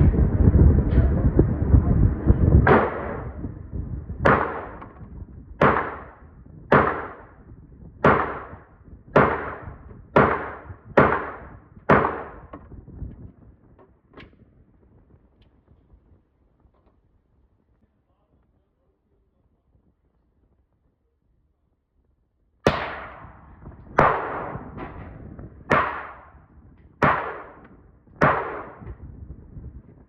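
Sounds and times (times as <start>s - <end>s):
gunshots with ringing tail: 2.6s - 3.5s, 4.2s - 5.0s, 5.6s - 7.4s, 8.0s - 12.5s, 22.7s - 29.0s.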